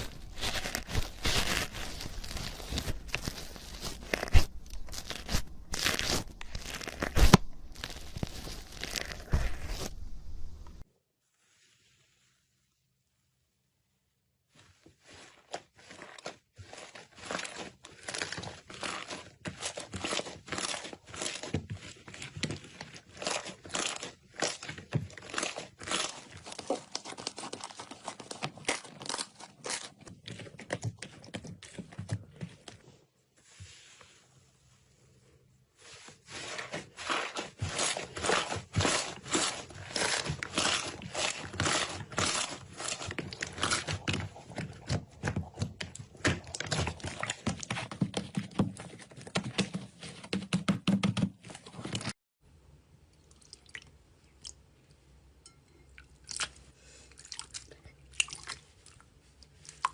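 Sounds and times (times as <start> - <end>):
slime crackling and popping: 0.0 - 10.8.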